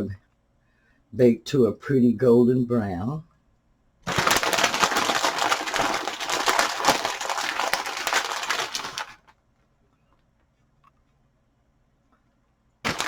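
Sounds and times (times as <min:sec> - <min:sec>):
plastic bag crinkling: 0:04.0 - 0:09.3.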